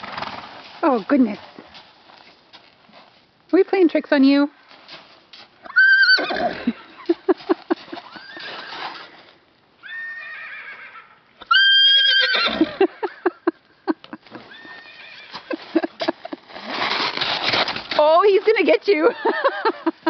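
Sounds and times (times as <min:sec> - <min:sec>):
horse whinnying: 0:05.6 - 0:06.8, 0:08.0 - 0:09.1, 0:09.8 - 0:12.8, 0:14.4 - 0:15.6.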